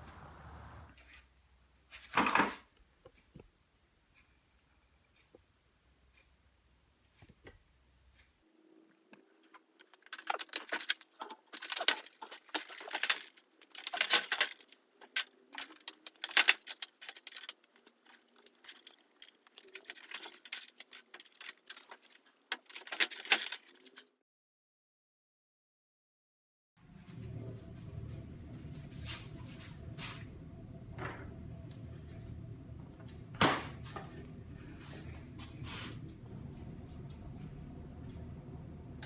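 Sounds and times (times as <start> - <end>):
clattering and scraping rattles: 9.2 - 24.1
faint steady hum: 26.8 - 39.0.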